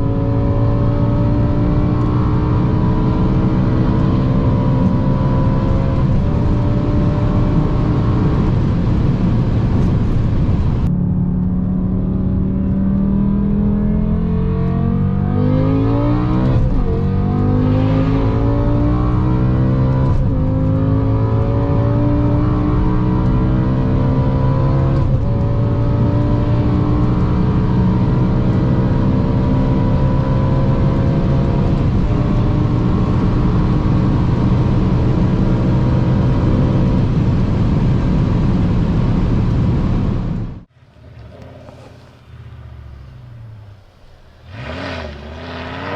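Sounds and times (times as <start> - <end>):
engine revving under load: 11.2 - 37.2, 40.6 - 45.9.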